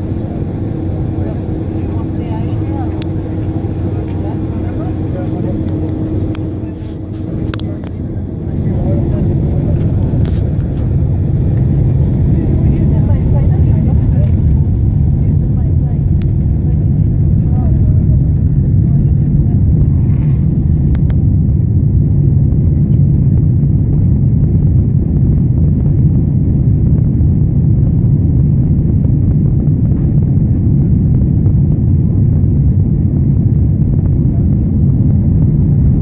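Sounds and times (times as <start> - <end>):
jet engines and airflow rumble: 0.0 - 36.0.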